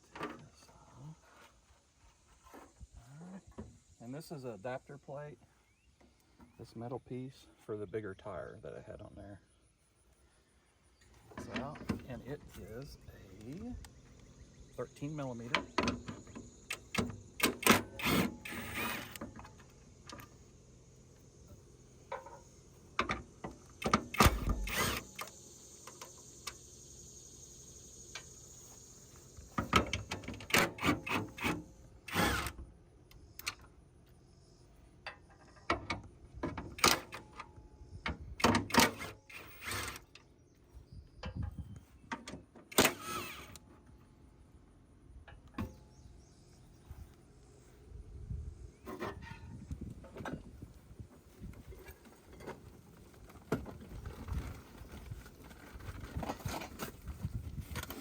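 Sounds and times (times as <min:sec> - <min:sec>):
hand tools and metal parts clanking: 0:11.0 - 0:13.8, 0:21.4 - 0:26.7, 0:27.9 - 0:32.4, 0:48.8 - 0:58.0.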